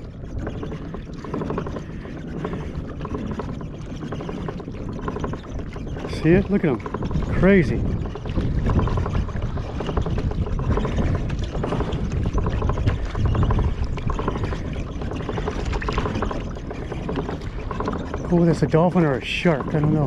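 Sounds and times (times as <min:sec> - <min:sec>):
shallow water lapping: 0:00.0 - 0:20.0
wind buffeting microphone: 0:00.0 - 0:20.0.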